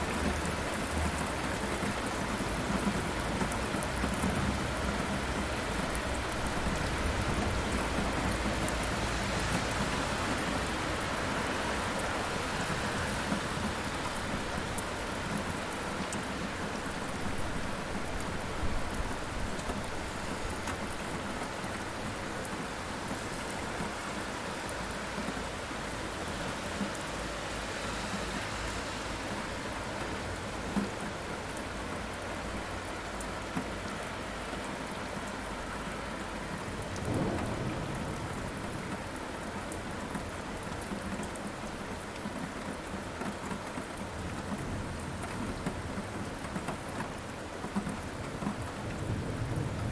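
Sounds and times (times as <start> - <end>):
steady rain falling: 0.0 - 49.9
low thunder rumble: 36.9 - 39.2, 48.8 - 49.9.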